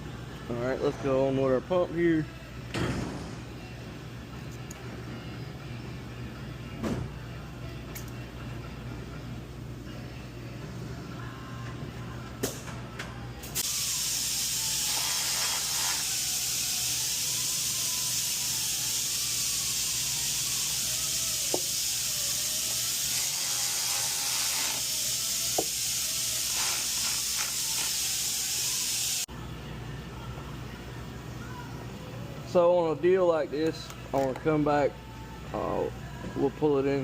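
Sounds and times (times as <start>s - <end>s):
loud steady hiss: 13.5s - 29.3s.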